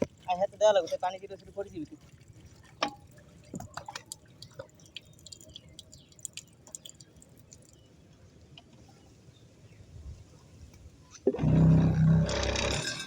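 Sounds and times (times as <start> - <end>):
water dripping and splashing: 0.0 - 9.2.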